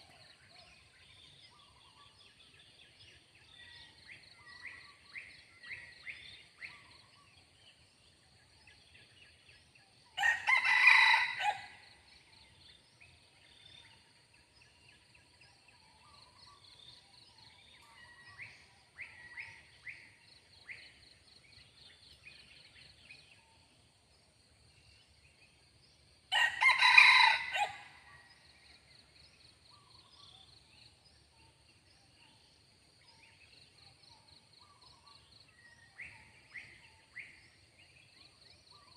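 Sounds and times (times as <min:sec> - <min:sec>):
rooster crowing: 0:10.2 - 0:11.8, 0:26.3 - 0:28.0.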